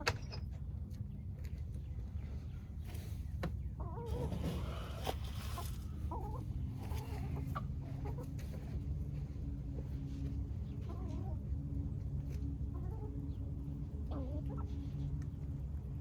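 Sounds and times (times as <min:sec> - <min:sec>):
chickens clucking: 0:02.1 - 0:09.5, 0:10.6 - 0:15.7.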